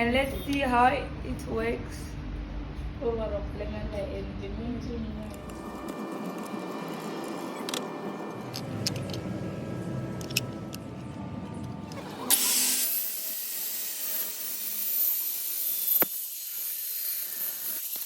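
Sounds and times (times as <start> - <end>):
low background rumble: 0.0 - 12.3
circular saw whining: 5.3 - 18.0.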